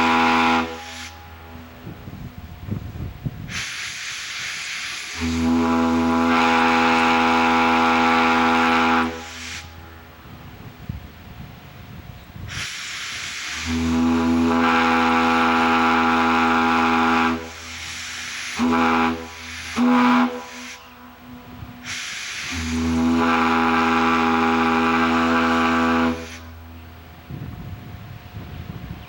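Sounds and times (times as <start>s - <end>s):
deep ship's whistle blasts: 0.0s - 1.6s, 3.5s - 9.8s, 12.6s - 26.6s
hiss of air: 0.0s - 29.0s.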